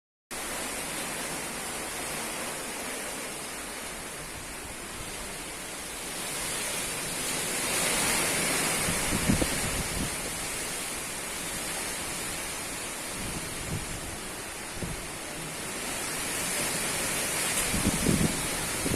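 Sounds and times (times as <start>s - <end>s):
strong wind blowing: 7.6s - 10.8s, 12.2s - 15.4s, 17.4s - 18.9s
wind buffeting microphone: 8.6s - 10.7s, 13.1s - 15.2s, 16.1s - 18.9s.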